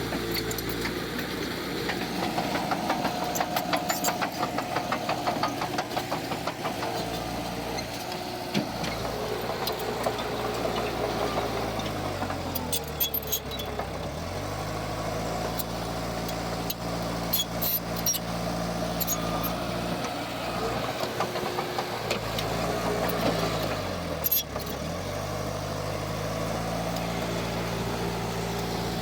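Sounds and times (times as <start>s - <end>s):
heavy diesel engine running: 0.0s - 29.0s
sharp metal clanks and clicks: 1.9s - 7.3s, 11.8s - 13.9s, 19.0s - 19.6s.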